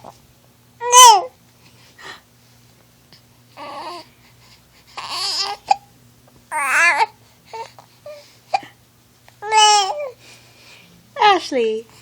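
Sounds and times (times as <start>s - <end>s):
baby hiccups: 0.8s - 1.3s
baby cooing: 0.8s - 1.4s, 3.6s - 4.1s, 5.0s - 5.9s, 6.5s - 8.2s, 9.4s - 10.2s.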